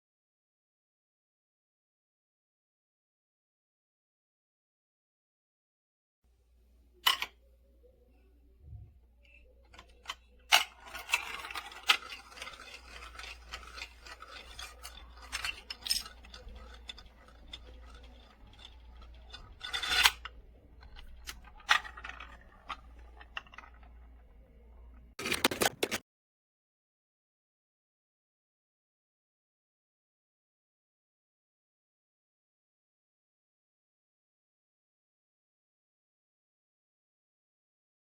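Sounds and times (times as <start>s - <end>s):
marbles rattling through plastic track: 9.7s - 26.0s.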